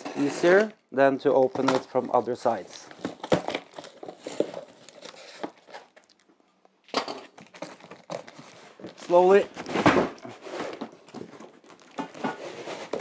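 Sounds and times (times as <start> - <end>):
cardboard rustle: 2.4 - 6.0, 7.4 - 13.0.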